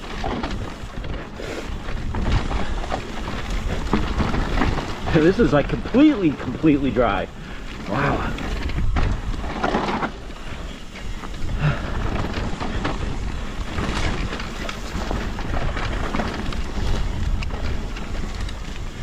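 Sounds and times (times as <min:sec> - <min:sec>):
bike knocks and clicks: 0:00.0 - 0:07.2, 0:08.4 - 0:19.0
tyres rolling on dirt: 0:00.0 - 0:19.0
wind on microphone: 0:07.2 - 0:19.0.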